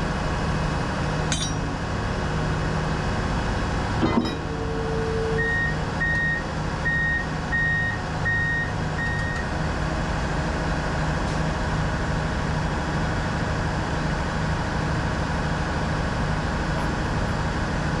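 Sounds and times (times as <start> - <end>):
diesel engine running: 0.0 - 18.0
vehicle backup alarm beeping: 4.6 - 9.5.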